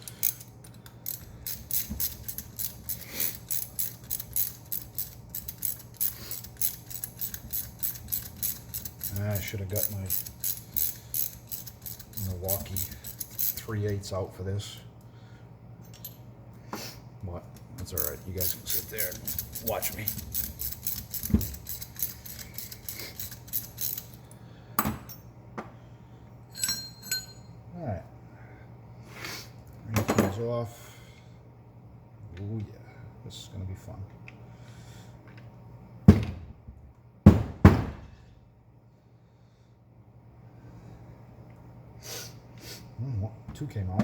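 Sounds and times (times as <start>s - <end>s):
ratchet wrench clicking: 0.0s - 13.8s, 17.8s - 24.2s.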